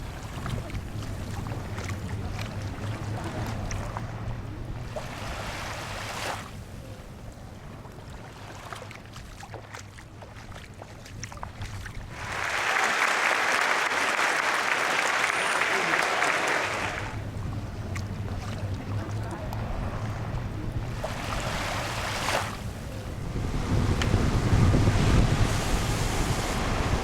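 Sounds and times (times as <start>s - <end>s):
water noise: 0.0s - 27.0s
wind: 0.0s - 27.0s
dense even applause-like noise: 12.1s - 17.2s
steady low hum: 17.1s - 27.0s.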